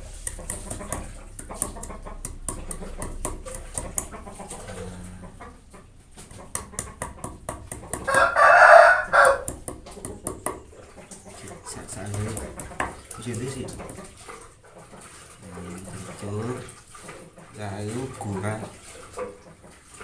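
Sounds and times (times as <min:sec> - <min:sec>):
pestle pounding in a mortar: 0:00.0 - 0:04.2, 0:06.2 - 0:08.4, 0:09.0 - 0:10.8, 0:11.5 - 0:14.1
chicken crowing: 0:08.0 - 0:09.5.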